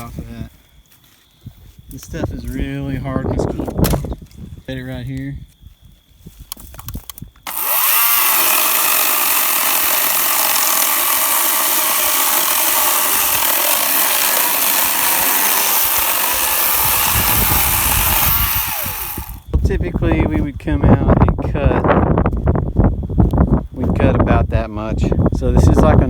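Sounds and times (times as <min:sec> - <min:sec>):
electric chainsaw cutting wood: 0:07.5 - 0:19.6.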